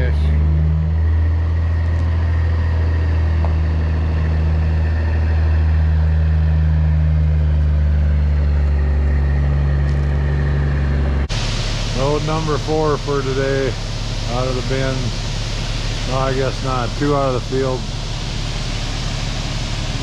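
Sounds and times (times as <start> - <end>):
truck engine droning: 0.0 - 20.0.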